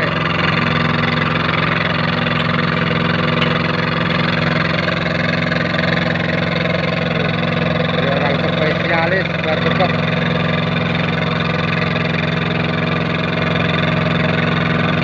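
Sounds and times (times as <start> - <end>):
machine engine running: 0.0 - 15.0.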